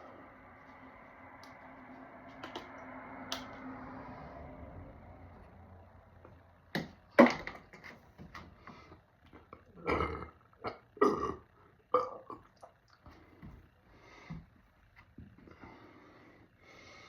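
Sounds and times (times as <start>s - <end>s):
man burping: 9.6s - 12.5s.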